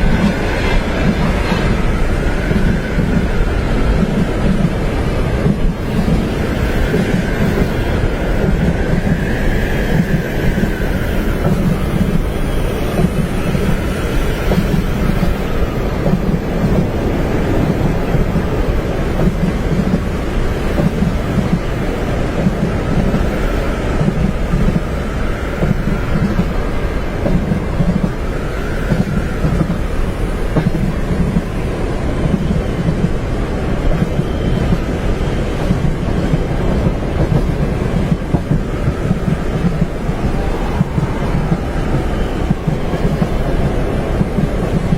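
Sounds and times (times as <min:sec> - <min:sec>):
train rumbling on tracks: 0:00.0 - 0:44.9
wind noise: 0:00.0 - 0:44.9.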